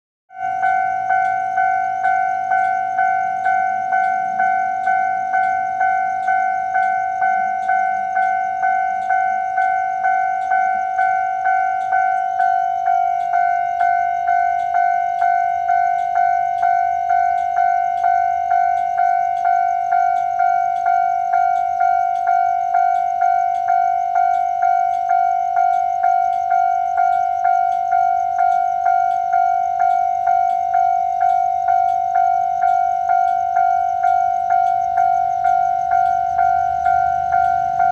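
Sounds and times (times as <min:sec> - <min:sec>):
level crossing warning bell ringing: 0:00.3 - 0:37.9.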